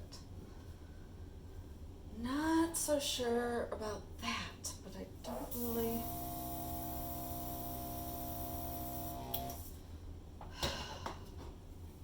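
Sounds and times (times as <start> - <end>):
hairdryer running: 5.5 - 9.7.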